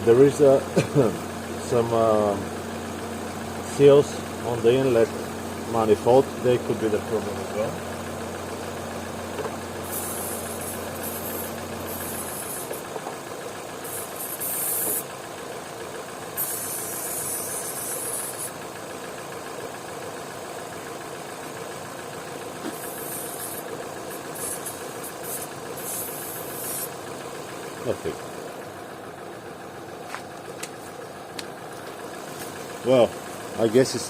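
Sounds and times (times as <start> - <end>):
petrol engine idling: 0.0 - 34.0
aerosol spray hissing: 9.8 - 12.9, 13.8 - 15.1, 16.4 - 18.6, 22.6 - 27.0.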